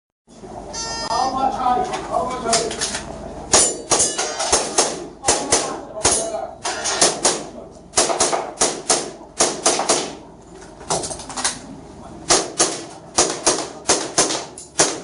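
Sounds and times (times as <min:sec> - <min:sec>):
airsoft pistol firing: 0:08.0 - 0:10.2.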